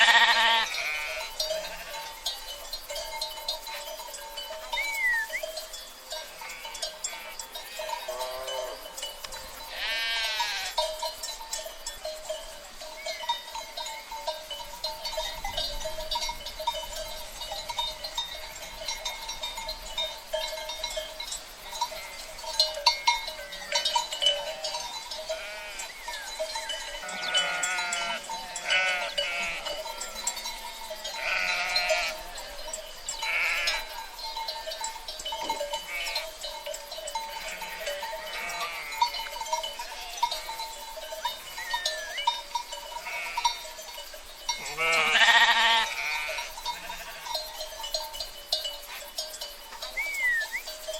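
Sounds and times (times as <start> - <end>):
sheep bleating: 0.0 - 2.1, 9.7 - 10.8, 25.3 - 25.9, 27.0 - 30.2, 31.2 - 32.2, 33.2 - 33.9, 35.9 - 36.2, 37.4 - 39.0, 43.0 - 43.6, 44.6 - 47.2.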